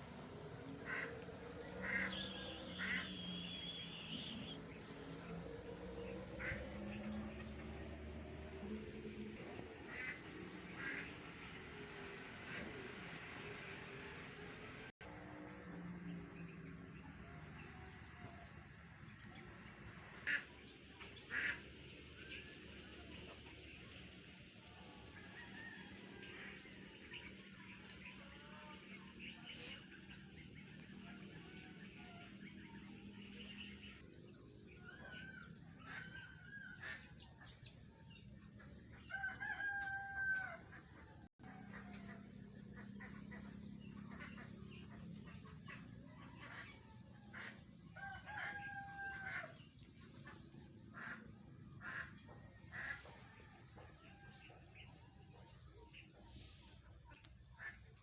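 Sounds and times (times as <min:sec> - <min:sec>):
roosters crowing: 0:24.8 - 0:27.0, 0:38.8 - 0:42.3, 0:46.0 - 0:51.8, 0:52.4 - 0:55.6.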